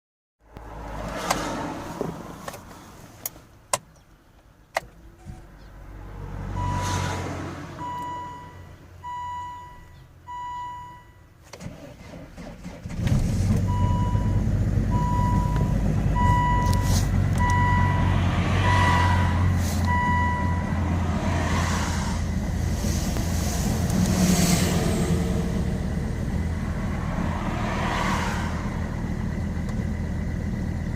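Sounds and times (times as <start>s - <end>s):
dashboard warning chime beeping: 6.6s - 7.0s, 7.8s - 11.3s, 13.7s - 20.8s
diesel engine idling: 13.6s - 30.9s.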